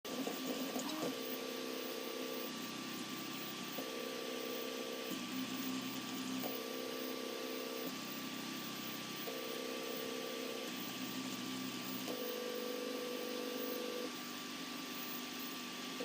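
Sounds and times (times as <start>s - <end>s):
printer motors whining: 0.1s - 16.0s.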